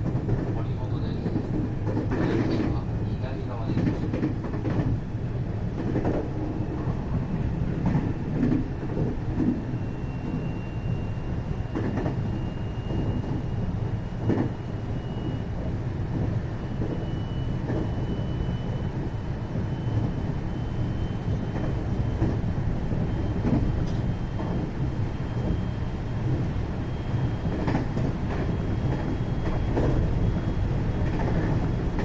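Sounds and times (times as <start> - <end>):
rail clacks: 0.0 - 5.0, 5.7 - 10.4, 11.7 - 13.4, 14.2 - 14.6, 15.2 - 20.2, 21.0 - 24.8, 27.4 - 32.0
train wheels rumbling on rail: 0.0 - 32.0.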